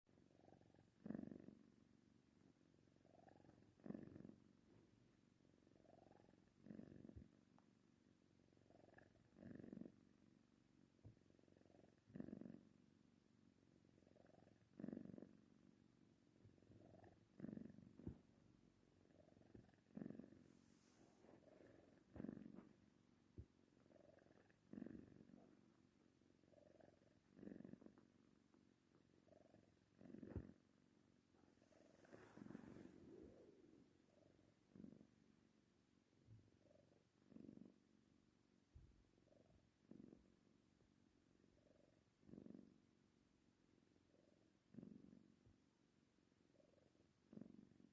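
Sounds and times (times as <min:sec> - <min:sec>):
cat snoring: 0:00.2 - 0:01.8, 0:03.0 - 0:04.9, 0:05.6 - 0:07.4, 0:08.5 - 0:10.1, 0:11.1 - 0:12.8, 0:13.9 - 0:15.7, 0:16.4 - 0:18.4, 0:19.0 - 0:22.8, 0:23.4 - 0:25.8, 0:26.4 - 0:28.1, 0:29.1 - 0:30.6, 0:31.4 - 0:35.3, 0:36.6 - 0:37.9, 0:39.2 - 0:40.4, 0:41.5 - 0:42.9, 0:44.0 - 0:45.5, 0:46.5 - 0:47.9.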